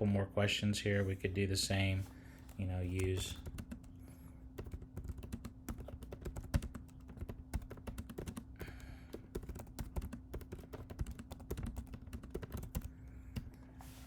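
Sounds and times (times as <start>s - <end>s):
faint steady hum: 0.0s - 14.0s
keyboard typing clicks: 4.6s - 13.5s.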